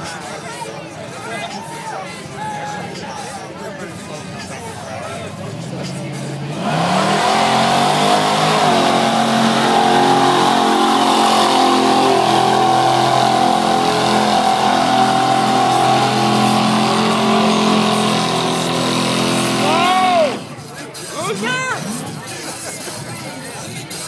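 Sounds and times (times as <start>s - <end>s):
truck engine at high revs: 3.8s - 23.0s.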